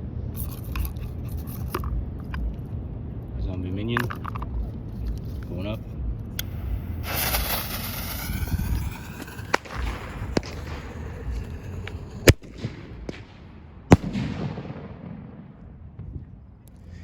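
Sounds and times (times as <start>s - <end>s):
firework hissing spray: 6.4s - 12.5s
sharp firework pops: 6.4s - 16.2s.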